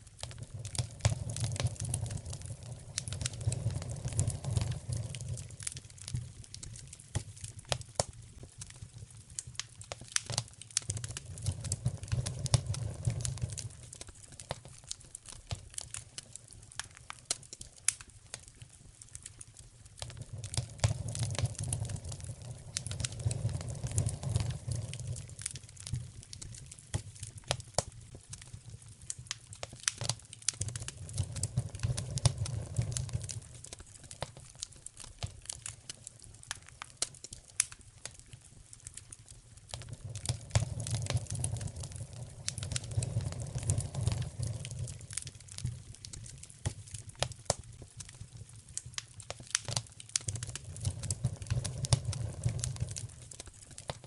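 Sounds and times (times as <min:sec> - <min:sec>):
wood fire crackling and popping: 0:00.0 - 0:54.0.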